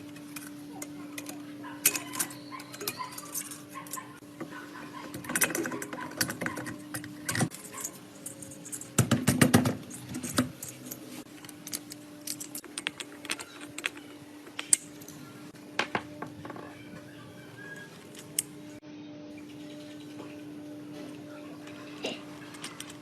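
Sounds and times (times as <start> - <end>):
metallic tool clicks and clinks: 0.1 - 4.1, 5.2 - 9.0, 9.9 - 15.2.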